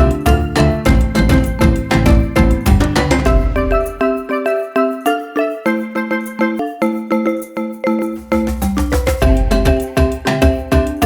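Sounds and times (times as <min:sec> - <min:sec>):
heavy bass: 0:00.0 - 0:04.1, 0:09.2 - 0:10.0
keyboard notes with beat: 0:00.0 - 0:11.0.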